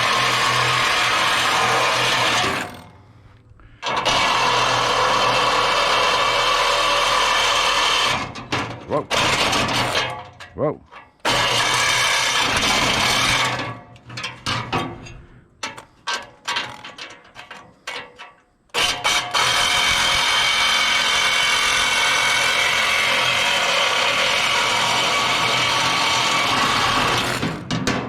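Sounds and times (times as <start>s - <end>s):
power tool cutting metal: 0.0s - 2.9s, 3.8s - 8.4s, 9.1s - 10.1s, 11.2s - 13.7s, 18.8s - 27.7s.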